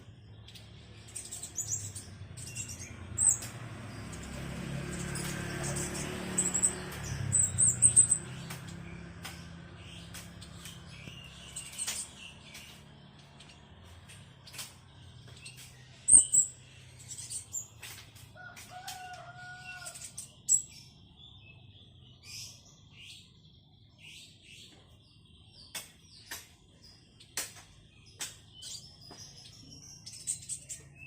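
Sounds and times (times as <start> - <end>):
bird chirping and twittering: 0.0 - 31.0
sharp clicks: 5.1 - 15.8
rooster crowing: 18.4 - 20.2.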